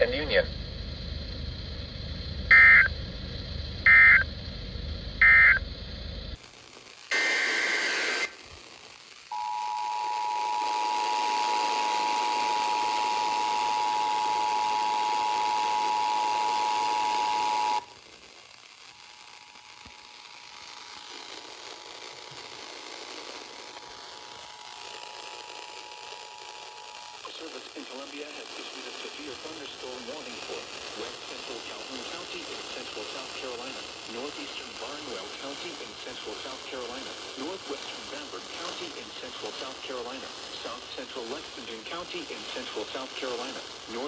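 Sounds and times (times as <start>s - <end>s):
screeching data bursts: 2.4s - 4.4s, 5.2s - 5.7s, 7.1s - 8.5s, 9.3s - 17.9s
two-tone attention signal: 2.5s - 2.9s, 3.9s - 4.2s, 5.2s - 5.6s
hiss with faint tone: 6.3s - 44.0s.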